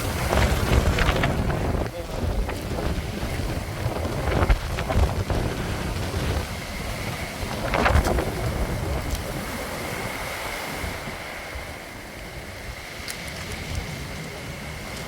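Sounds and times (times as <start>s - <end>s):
sea waves rushing: 0.0s - 15.0s
wind buffeting microphone: 0.0s - 15.0s.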